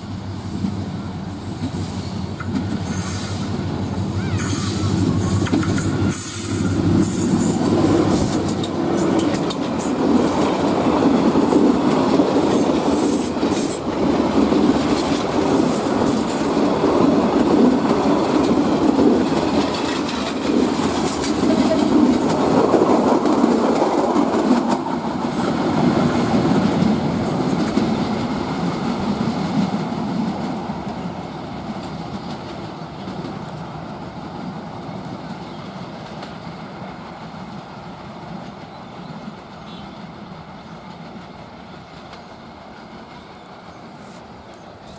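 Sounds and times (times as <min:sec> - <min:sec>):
train wheels clattering over rail joints: 0:01.6 - 0:03.5, 0:04.3 - 0:39.7
train wheels squealing: 0:01.6 - 0:10.0, 0:15.0 - 0:16.9.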